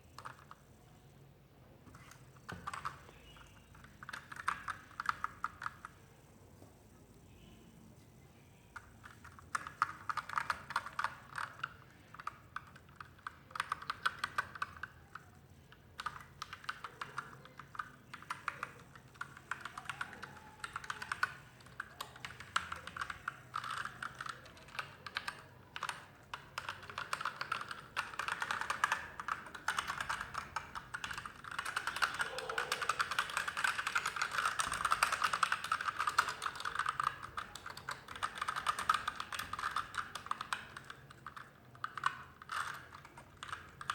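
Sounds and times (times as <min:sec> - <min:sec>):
mechanical keyboard key clacks: 0:16.0 - 0:43.9.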